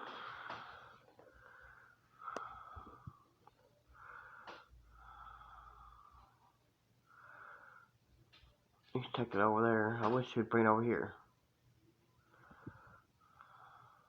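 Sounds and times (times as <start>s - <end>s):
soft breathing: 0.0s - 8.9s, 12.1s - 14.0s.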